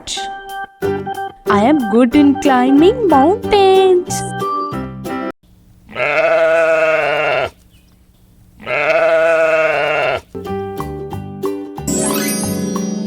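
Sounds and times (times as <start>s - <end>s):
light children's music: 0.0s - 5.3s, 10.4s - 13.0s
goat bleating: 5.9s - 7.6s, 8.6s - 10.4s.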